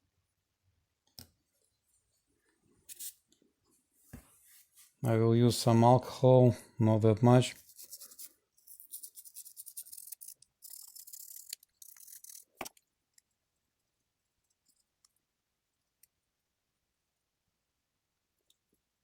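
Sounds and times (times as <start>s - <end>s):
faint wiping and rubbing: 3.8s - 5.0s, 7.5s - 12.4s.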